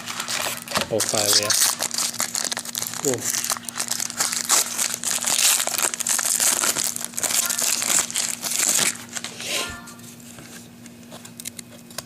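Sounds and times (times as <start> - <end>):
plastic wrappers crinkling: 0.0 - 9.4.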